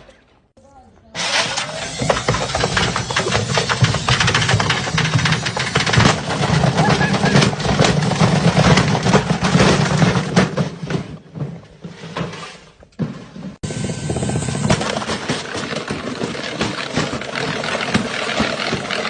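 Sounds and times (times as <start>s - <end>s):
pressure washer motor hum: 1.2s - 7.7s, 13.6s - 19.0s.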